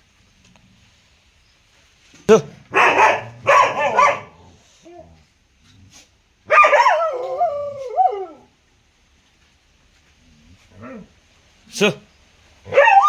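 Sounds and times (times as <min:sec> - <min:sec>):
dog barking: 0:02.4 - 0:04.6, 0:06.5 - 0:07.4, 0:12.7 - 0:13.0
dog drawn-out call: 0:02.4 - 0:05.0.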